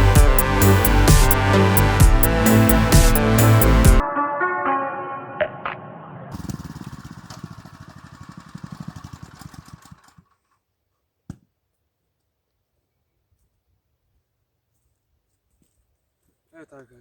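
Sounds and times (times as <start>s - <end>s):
petrol tiller engine running: 6.4s - 10.3s.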